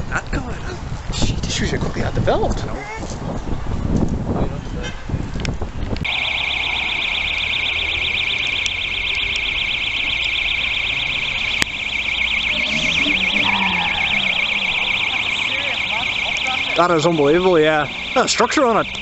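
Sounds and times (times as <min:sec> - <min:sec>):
car alarm siren warbling: 0:06.0 - 0:19.0.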